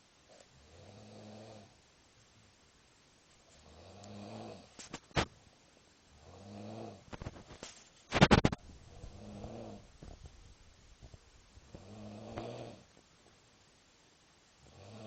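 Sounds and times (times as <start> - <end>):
man snoring heavily: 0.6 - 1.7, 3.6 - 4.7, 6.2 - 7.0, 9.1 - 9.9, 11.8 - 12.9, 14.6 - 15.0.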